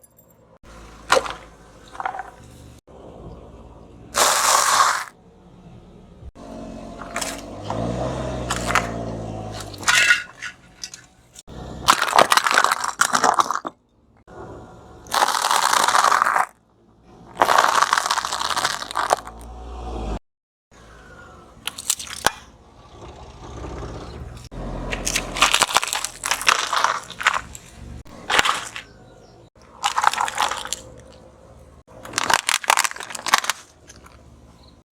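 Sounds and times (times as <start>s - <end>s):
objects crunching under car tyres: 0.7s - 2.8s, 4.2s - 5.2s, 6.4s - 13.8s, 15.0s - 19.6s, 21.6s - 22.5s, 24.1s - 34.8s
car slowing hum: 5.2s - 11.8s, 22.5s - 29.5s.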